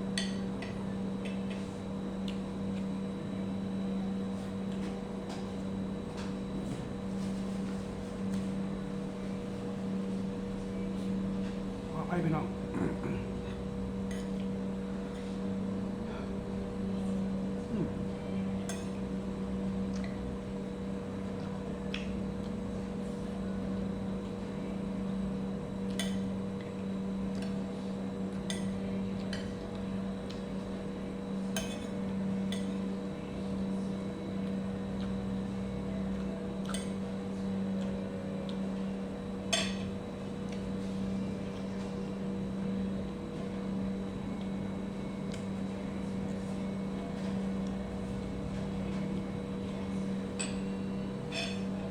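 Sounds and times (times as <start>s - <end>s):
low mechanical hum: 0.0s - 51.9s
cutlery clinking on a plate: 51.3s - 51.7s.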